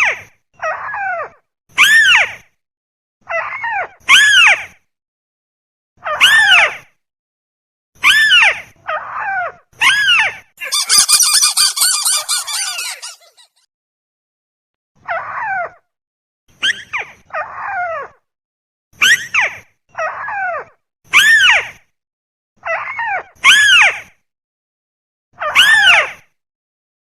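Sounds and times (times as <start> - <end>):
bird calling harshly: 10.6 - 13.5.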